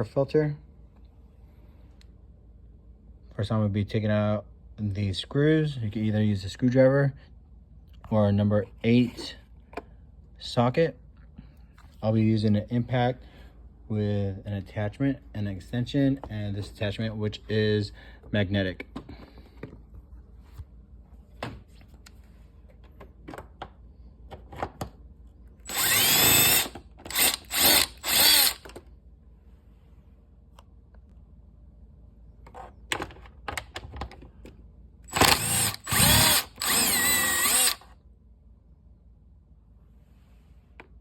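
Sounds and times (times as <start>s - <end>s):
impact driver bursts: 25.7s - 28.7s, 35.1s - 37.9s.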